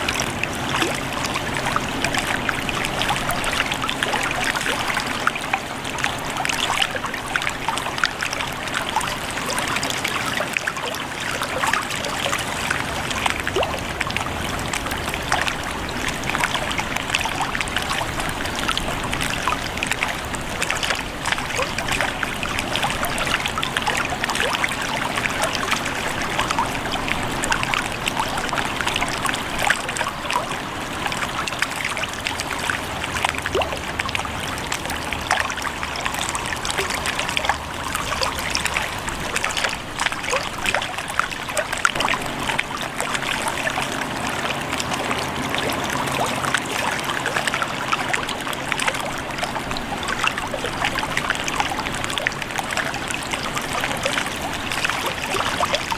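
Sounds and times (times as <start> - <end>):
lake water lapping: 0.0 - 55.9.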